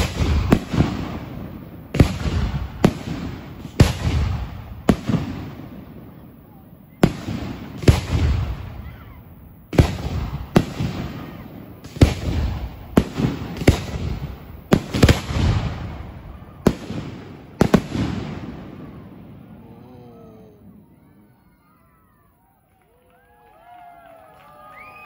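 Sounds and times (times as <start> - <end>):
fireworks banging: 0.0 - 21.7.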